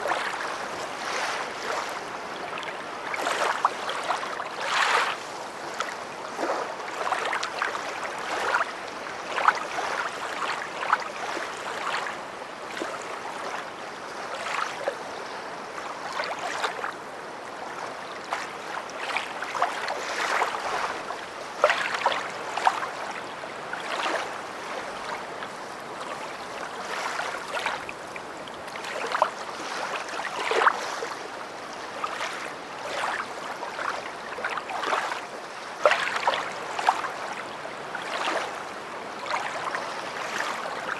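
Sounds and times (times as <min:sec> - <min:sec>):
lake waves lapping on shore: 0:00.0 - 0:40.9.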